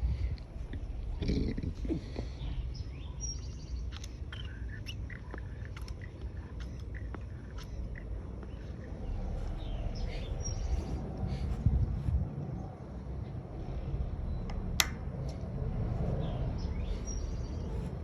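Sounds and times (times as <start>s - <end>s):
wind rumble on microphone: 0.0s - 18.0s
bird chirps: 1.3s - 11.1s, 16.0s - 18.0s
light clicks: 3.4s - 8.6s.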